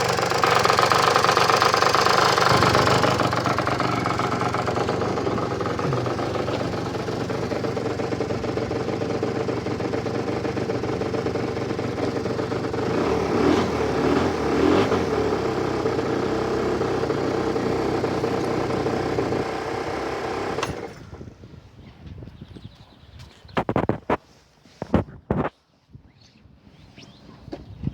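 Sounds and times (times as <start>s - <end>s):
scooter engine idling and revving: 0.0s - 21.3s.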